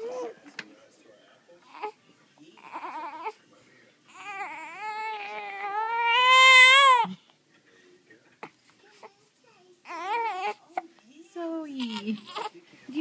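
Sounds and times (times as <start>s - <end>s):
baby crying: 1.7s - 2.0s, 2.6s - 3.4s, 4.1s - 7.2s, 9.8s - 10.6s, 11.8s - 12.6s.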